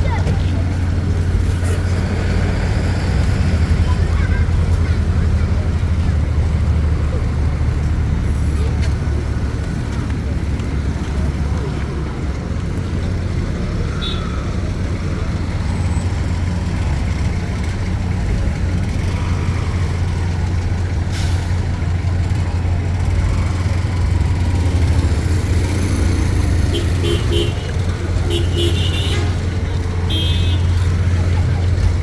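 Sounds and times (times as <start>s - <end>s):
road traffic rumble: 0.0s - 32.0s.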